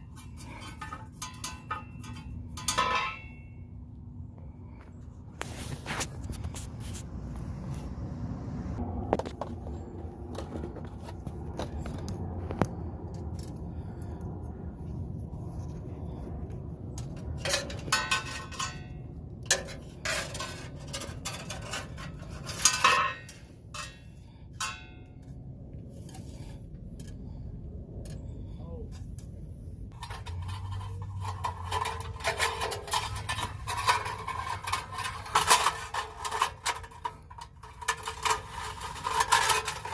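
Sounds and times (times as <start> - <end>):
metal clinking and clanking: 0.0 - 3.7, 17.0 - 25.4, 29.9 - 39.9
low rumble: 3.3 - 21.2, 23.4 - 34.4.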